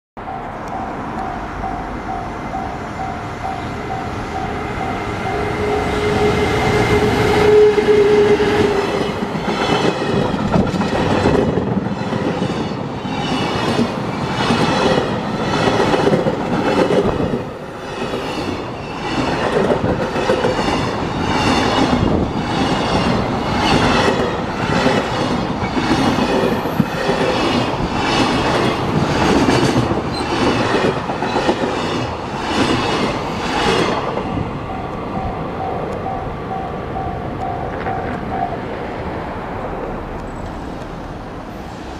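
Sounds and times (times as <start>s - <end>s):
level crossing alarm ringing: 0.2s - 9.0s, 34.3s - 38.6s
electric locomotive humming: 0.2s - 41.9s.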